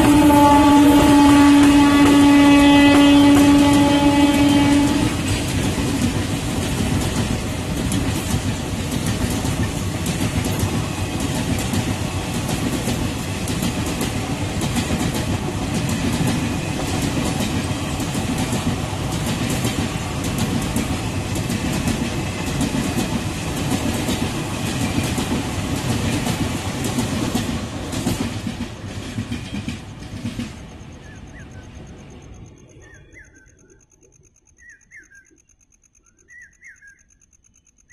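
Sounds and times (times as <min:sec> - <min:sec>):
train horn: 0:00.0 - 0:05.3
train coaches rattling past: 0:00.0 - 0:33.2.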